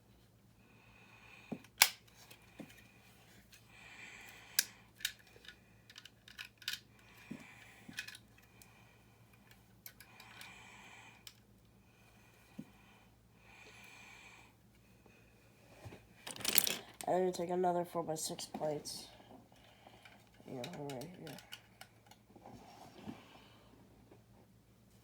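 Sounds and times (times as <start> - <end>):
plastic bricks clicking together: 4.6 - 6.8, 16.3 - 16.9.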